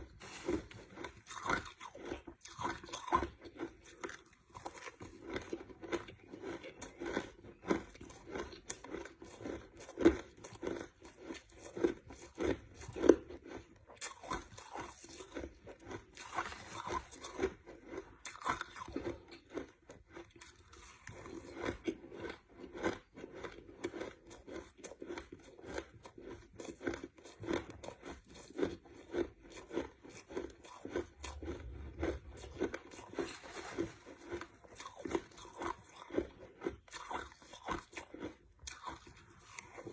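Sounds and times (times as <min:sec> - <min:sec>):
person chewing crushed ice: 0:00.0 - 0:39.9.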